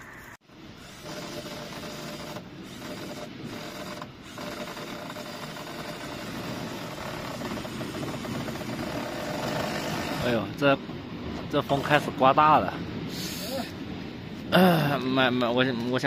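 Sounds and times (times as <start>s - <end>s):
machine rattling: 0.8s - 10.4s.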